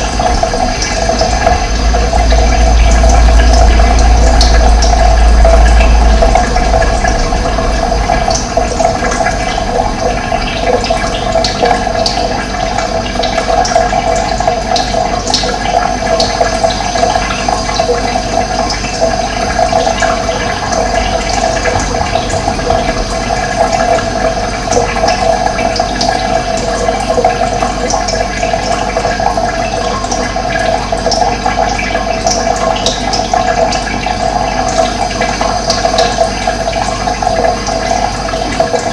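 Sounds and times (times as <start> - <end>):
deep rumble: 0.0 - 14.9, 17.0 - 27.8
water running steadily: 0.0 - 38.9.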